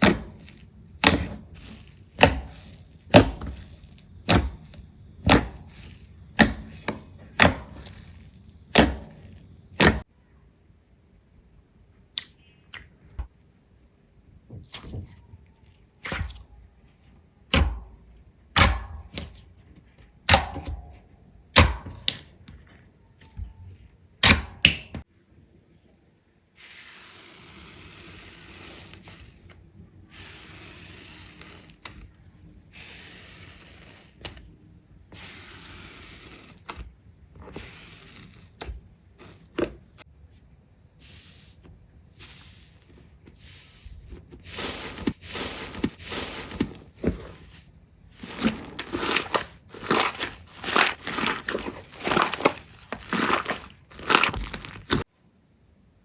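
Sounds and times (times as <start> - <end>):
slime crackling: 48.2 - 55.0.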